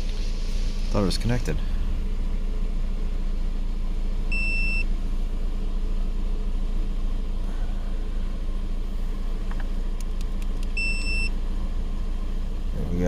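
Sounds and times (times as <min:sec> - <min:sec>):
car engine idling: 0:00.0 - 0:13.0
short electronic beep: 0:10.8 - 0:11.3.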